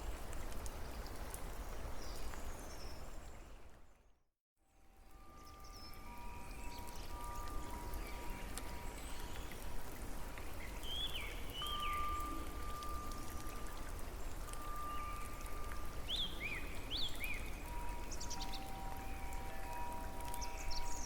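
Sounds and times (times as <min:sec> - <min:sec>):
dripping trickling water: 0:05.0 - 0:21.0
long whistled bird notes: 0:10.9 - 0:13.6.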